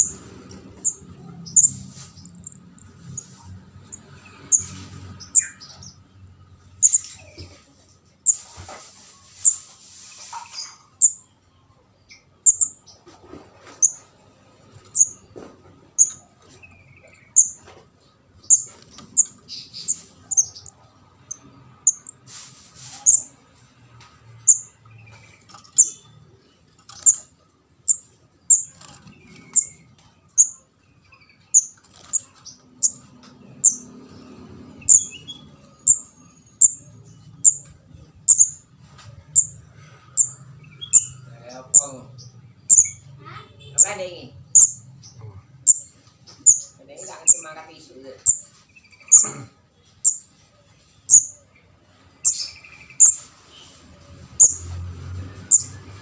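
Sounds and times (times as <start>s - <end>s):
young bird chirping: 0.0s - 6.0s, 6.7s - 7.6s, 8.2s - 11.4s, 12.1s - 14.1s, 14.8s - 15.3s, 16.0s - 17.7s, 18.4s - 22.2s, 23.0s - 23.3s, 24.4s - 26.2s, 26.9s - 33.9s, 34.8s - 38.7s, 39.3s - 49.4s, 50.0s - 50.4s, 51.0s - 51.5s, 52.2s - 53.8s, 54.4s - 54.7s.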